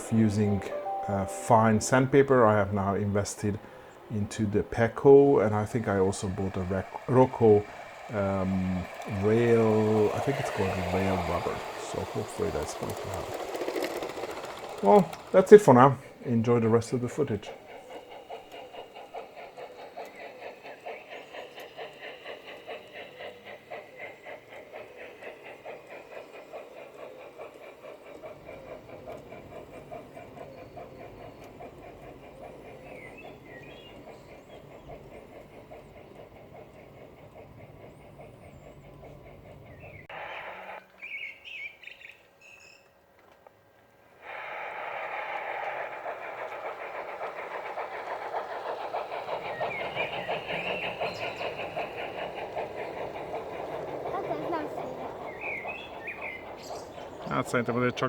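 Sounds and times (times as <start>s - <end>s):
model train motor humming: 0.0s - 40.8s, 44.2s - 58.0s
birds chirping: 0.0s - 42.9s, 45.0s - 58.0s
train wheels clicking over rail joints: 0.0s - 58.0s.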